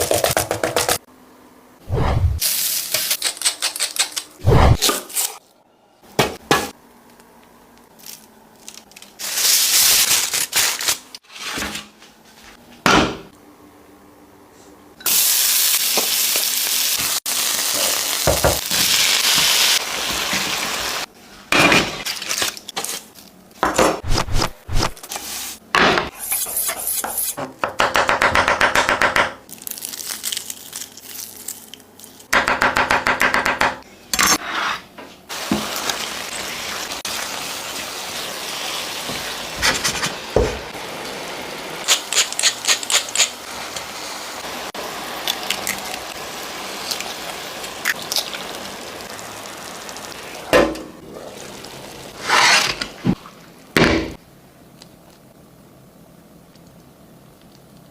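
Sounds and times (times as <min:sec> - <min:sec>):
food sizzling in a pan: 0:15.0 - 0:21.1, 0:35.3 - 0:52.6.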